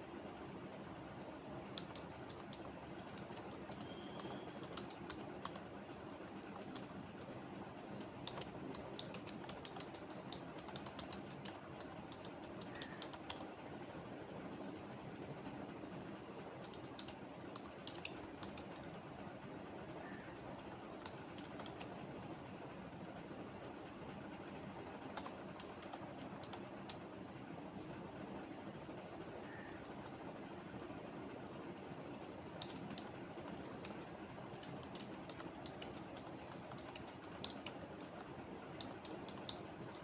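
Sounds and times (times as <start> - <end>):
faint background hum: 0.0 - 40.0
keyboard typing: 1.6 - 7.1, 7.9 - 13.6, 16.6 - 19.0, 20.9 - 22.0, 25.0 - 27.1, 32.0 - 40.0.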